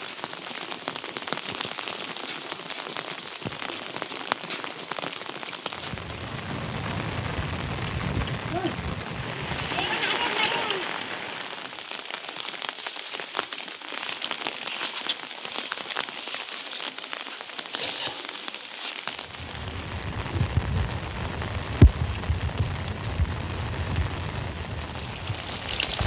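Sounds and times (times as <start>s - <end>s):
rain drops tapping on a surface: 0.0s - 26.0s
low rumble: 5.9s - 9.7s, 19.3s - 26.0s.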